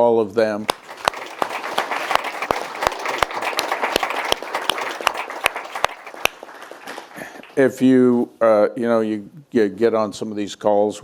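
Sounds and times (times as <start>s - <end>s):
audience applauding: 0.6s - 7.7s.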